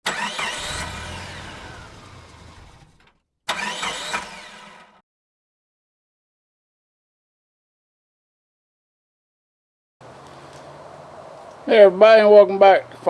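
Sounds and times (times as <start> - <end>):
engine noise with sweeping pitch: 0.4 - 3.0.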